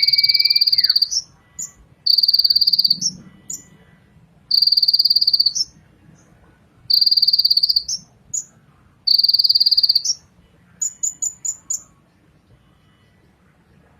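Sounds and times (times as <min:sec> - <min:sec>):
bird buzzing trills: 0:00.0 - 0:03.8, 0:04.5 - 0:05.7, 0:06.9 - 0:08.5, 0:09.1 - 0:10.2.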